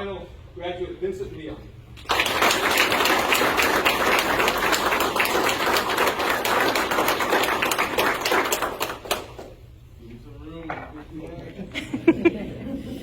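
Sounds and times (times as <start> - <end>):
audience applauding: 2.0 - 9.6.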